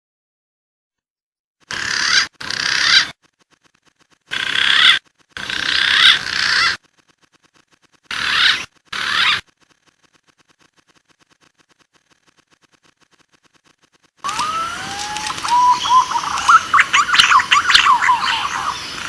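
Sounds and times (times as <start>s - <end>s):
pigeon whistled calls: 14.3s - 18.9s.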